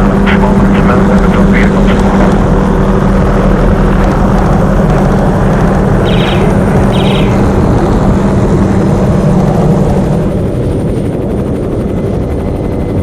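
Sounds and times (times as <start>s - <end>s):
helicopter rotor and turbine noise: 0.0s - 13.0s
wind: 0.0s - 13.0s.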